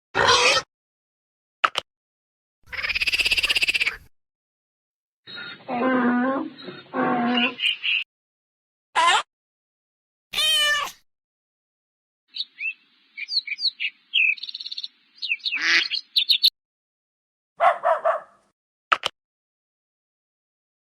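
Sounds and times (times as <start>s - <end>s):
bird chirps and tweets: 6.6s - 8.0s, 12.3s - 16.5s.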